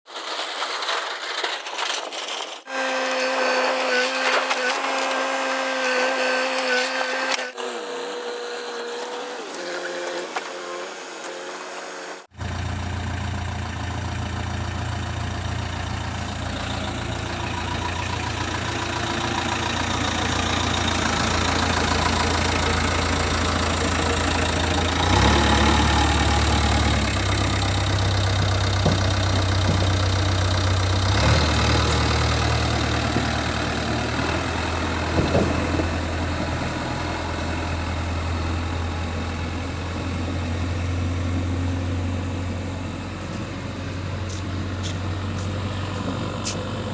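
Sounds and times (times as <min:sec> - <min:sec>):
diesel engine running: 0:10.2 - 0:46.9.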